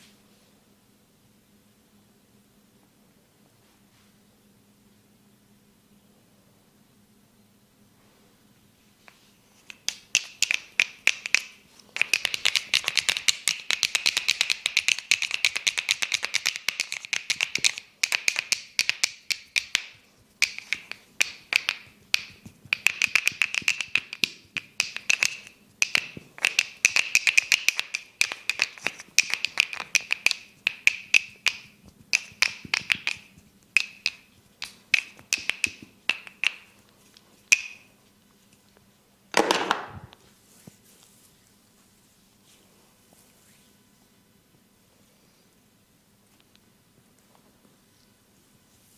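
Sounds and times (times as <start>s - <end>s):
hands clicking and tapping on head: 9.1s - 37.9s.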